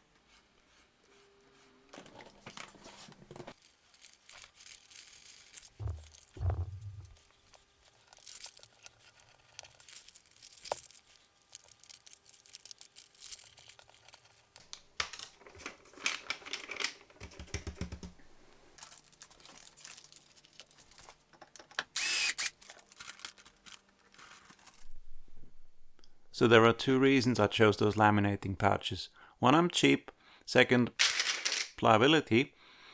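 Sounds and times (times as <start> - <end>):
plastic film crinkling: 3.0 - 16.6, 18.8 - 21.3, 22.5 - 24.9
clicks and taps: 17.2 - 18.2.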